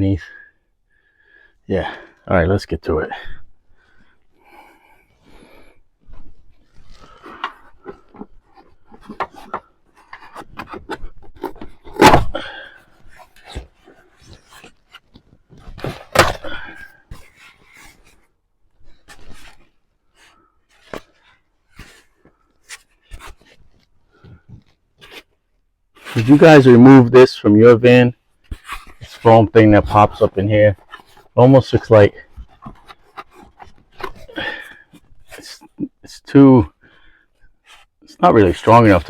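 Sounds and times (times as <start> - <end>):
loud thumps: 11.9 - 12.5
rustles and light clicks: 17.0 - 26.6, 28.2 - 35.6.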